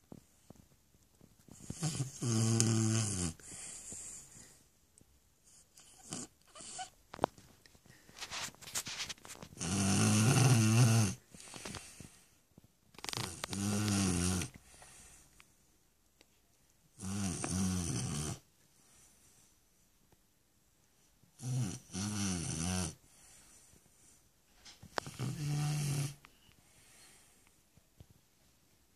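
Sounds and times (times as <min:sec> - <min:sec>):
dog snoring: 0:01.5 - 0:04.2, 0:05.4 - 0:07.0, 0:09.6 - 0:11.2, 0:13.0 - 0:14.6, 0:17.0 - 0:18.5, 0:21.4 - 0:23.0, 0:25.0 - 0:26.2.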